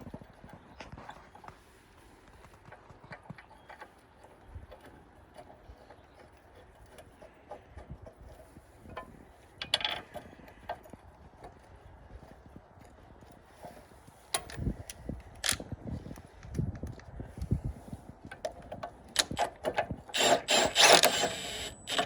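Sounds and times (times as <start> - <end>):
hand tools clicking and knocking: 3.1 - 11.5, 12.8 - 17.5, 18.3 - 22.0
metal parts clattering: 19.2 - 22.0.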